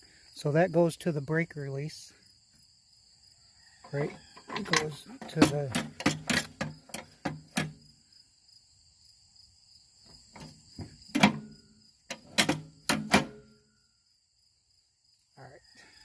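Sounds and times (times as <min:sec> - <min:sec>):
crickets chirping: 0:00.0 - 0:16.0
metallic clicks and knocks: 0:03.8 - 0:07.8, 0:10.4 - 0:11.5, 0:12.1 - 0:13.4.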